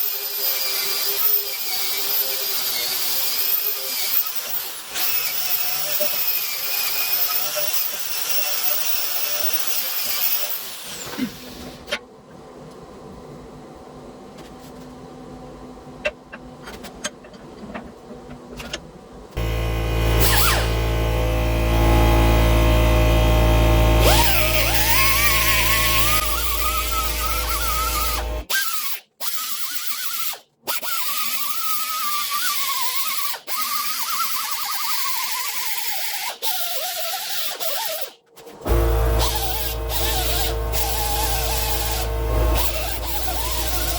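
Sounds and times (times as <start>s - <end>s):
low machine hum: 19.4s - 28.5s, 38.7s - 43.9s
power tool motor whine: 19.4s - 28.5s, 38.5s - 43.9s.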